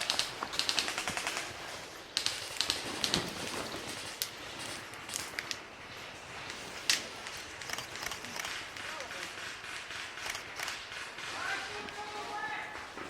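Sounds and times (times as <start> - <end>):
airsoft guns firing: 0.0 - 4.1, 8.5 - 12.7.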